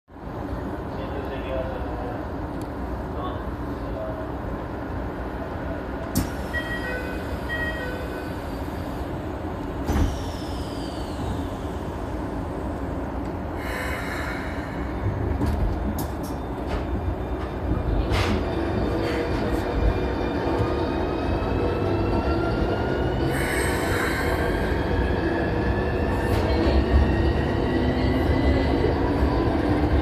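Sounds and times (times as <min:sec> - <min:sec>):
train wheels rumbling: 0:06.0 - 0:30.0.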